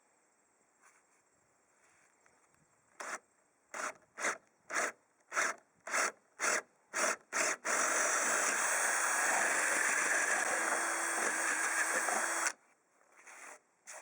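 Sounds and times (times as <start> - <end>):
power drill boring through wood: 6.4 - 12.6.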